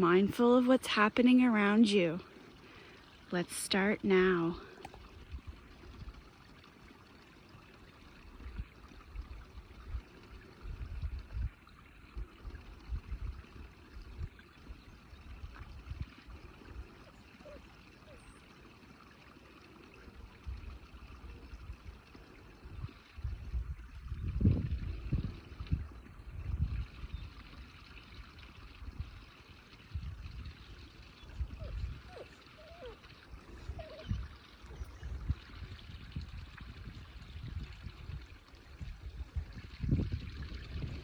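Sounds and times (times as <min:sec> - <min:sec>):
wind buffeting microphone: 0:08.4 - 0:11.7, 0:22.6 - 0:27.4, 0:31.2 - 0:41.0.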